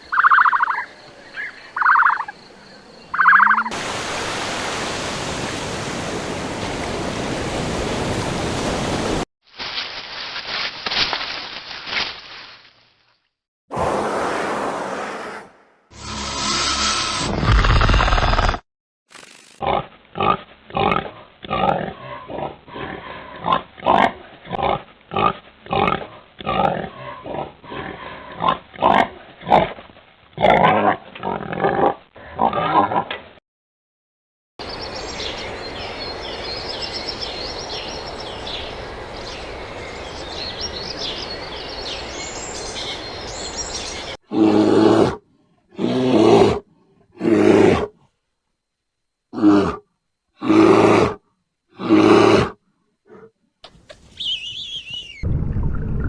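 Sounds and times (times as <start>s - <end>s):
high chirping: 54.1s - 55.2s.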